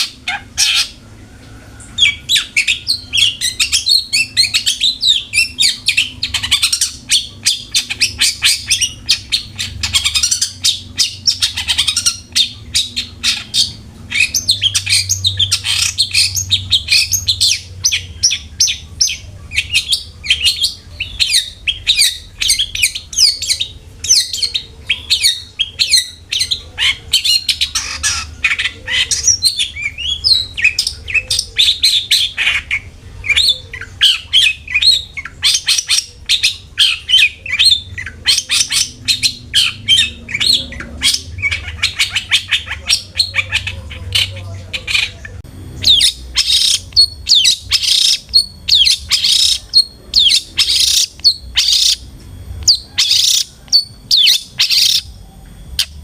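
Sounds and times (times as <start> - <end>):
shrike singing harsh chatter: 0.0 - 56.0.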